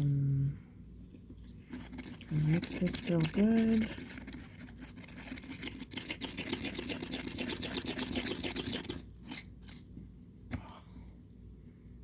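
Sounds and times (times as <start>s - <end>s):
stir stick scraping a cup: 1.4s - 9.8s.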